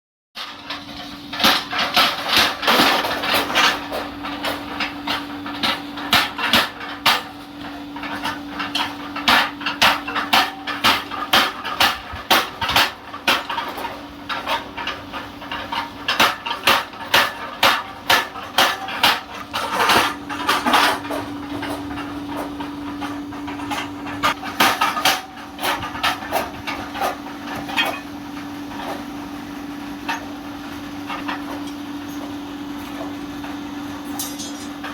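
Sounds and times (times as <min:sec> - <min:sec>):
hammer striking metal: 0:34.2 - 0:34.9.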